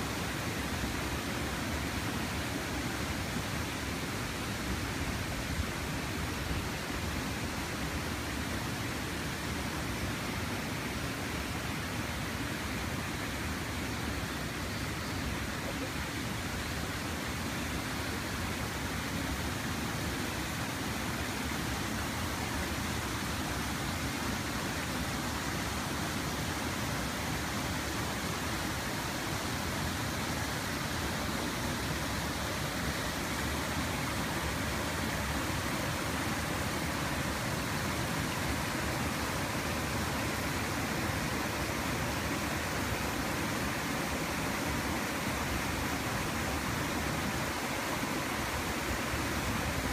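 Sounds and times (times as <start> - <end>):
stream water flowing: 0.0 - 49.9.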